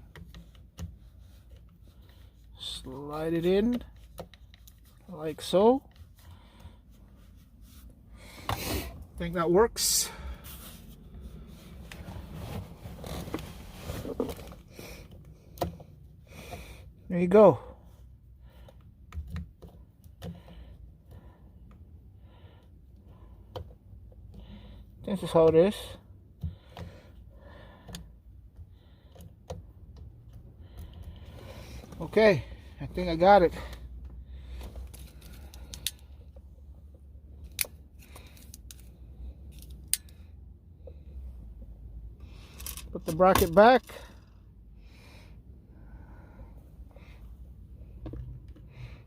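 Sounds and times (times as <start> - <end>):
small parts clicking and tapping: 34.8 - 36.5, 37.4 - 40.3.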